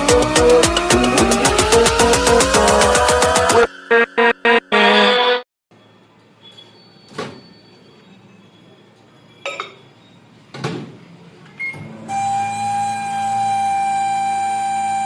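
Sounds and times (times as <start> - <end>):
short beep: 5.7 - 10.2.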